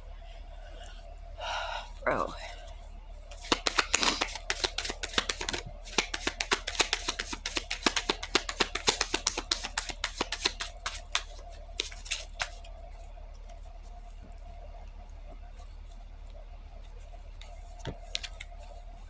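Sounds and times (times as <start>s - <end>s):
faint steady hum: 0.0s - 19.0s
cards being shuffled: 3.3s - 12.7s, 17.8s - 18.6s.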